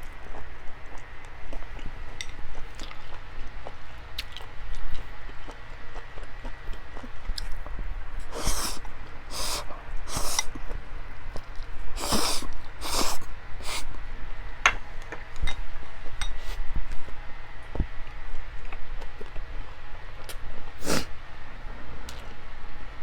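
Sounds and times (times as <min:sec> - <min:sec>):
short hissy bursts: 0:08.2 - 0:10.4, 0:12.0 - 0:13.9
person chewing: 0:08.2 - 0:10.5, 0:12.0 - 0:13.9.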